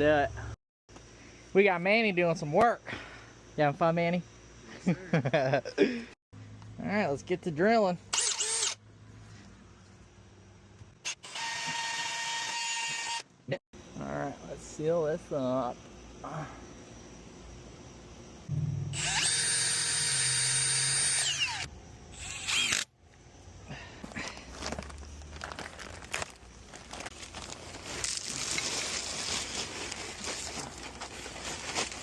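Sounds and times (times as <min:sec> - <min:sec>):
power drill running: 0:08.1 - 0:08.8, 0:11.0 - 0:13.2, 0:18.9 - 0:22.9.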